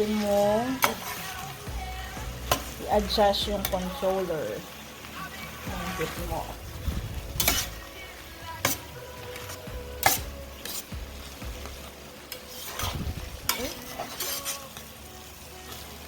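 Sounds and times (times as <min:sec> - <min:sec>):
utensil scraping metal pan: 0:00.0 - 0:01.4, 0:05.7 - 0:11.0, 0:12.3 - 0:14.8
light sizzle: 0:00.0 - 0:16.0.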